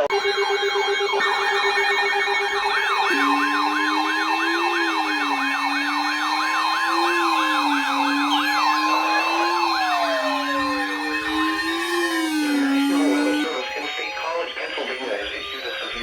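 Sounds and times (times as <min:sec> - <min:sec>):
steady alarm tones: 0:00.2 - 0:16.0
rapid yelping siren: 0:00.3 - 0:16.0
wavering low siren wail: 0:01.2 - 0:14.6
falling pitch sweeps: 0:02.5 - 0:14.0.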